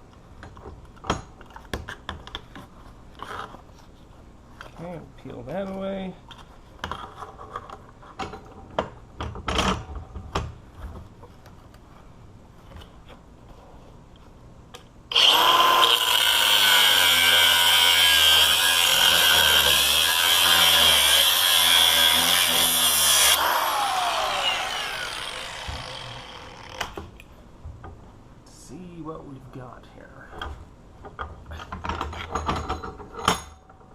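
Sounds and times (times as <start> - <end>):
cutoff wheel cutting steel: 15.1 - 27.1.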